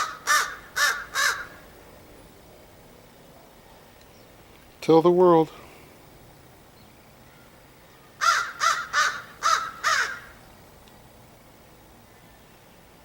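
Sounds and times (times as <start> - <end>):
crow cawing: 0.0 - 1.6, 8.2 - 10.4.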